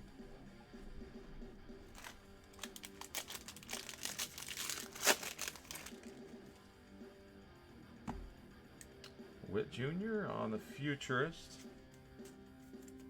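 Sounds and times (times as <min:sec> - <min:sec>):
foil wrapper crinkling and tearing: 0:01.9 - 0:06.3.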